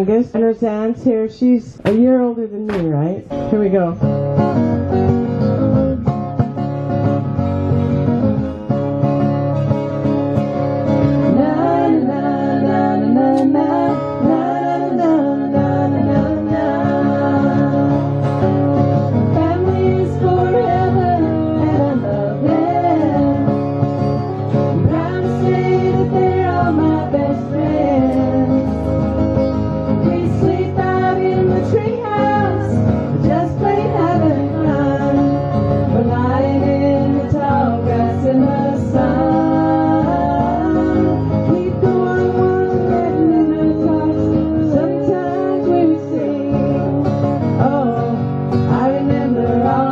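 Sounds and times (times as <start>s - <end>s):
strummed acoustic guitar: 0.0s - 49.9s
women singing together: 11.1s - 29.0s, 29.9s - 49.9s.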